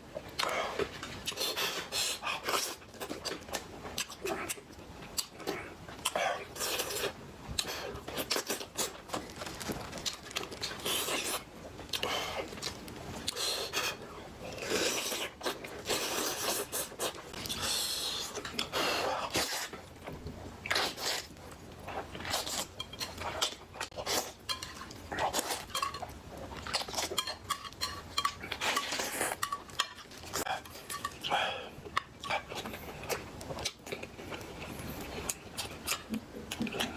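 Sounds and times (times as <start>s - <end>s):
chewing: 0.4s - 36.9s
cutlery scraping a dish: 26.8s - 30.1s, 30.7s - 31.2s.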